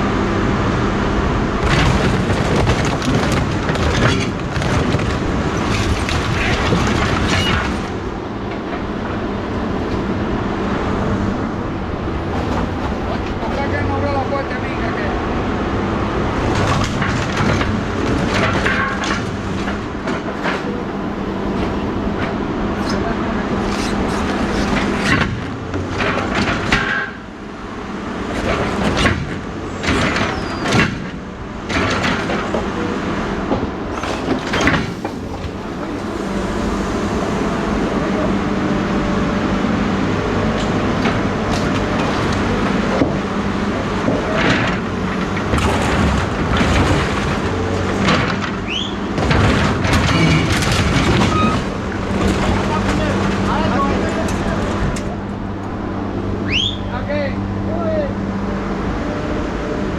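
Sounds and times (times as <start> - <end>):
knocks and clanks: 12.0 - 14.3, 33.5 - 38.2
vehicle engine running: 33.7 - 40.8.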